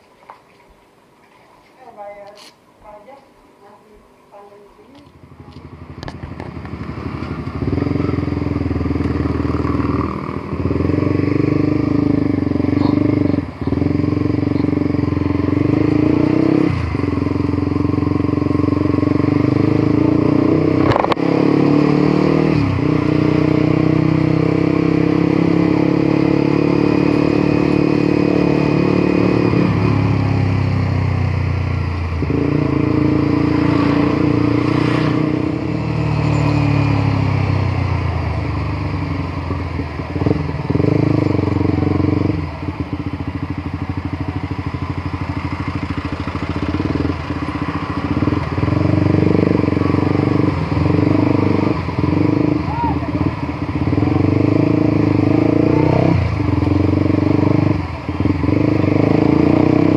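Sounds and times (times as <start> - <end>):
motorcycle engine running: 4.4 - 59.9.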